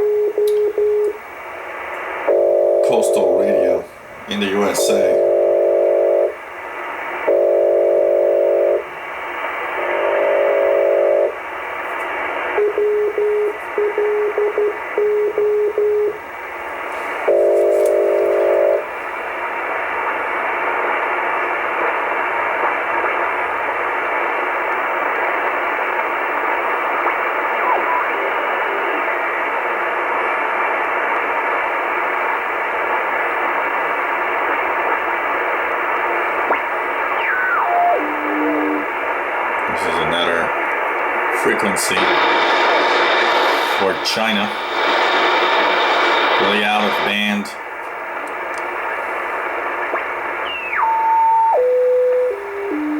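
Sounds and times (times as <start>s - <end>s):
static hiss: 0.0s - 52.9s
radio data tone bursts: 2.0s - 6.4s, 7.0s - 16.6s, 24.7s - 30.6s, 31.8s - 47.6s, 49.5s - 52.9s.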